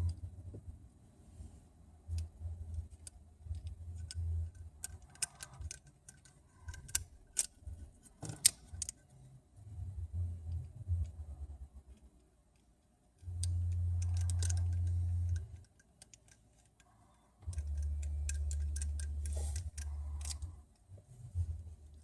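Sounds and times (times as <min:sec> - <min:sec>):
metal tools clicking and tapping: 0:02.9 - 0:07.5, 0:13.2 - 0:20.5
low handling rumble: 0:09.6 - 0:11.8, 0:17.4 - 0:22.0.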